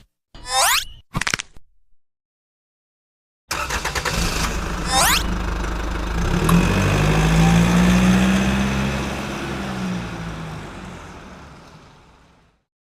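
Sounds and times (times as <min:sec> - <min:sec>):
vehicle engine humming: 0:04.2 - 0:12.6.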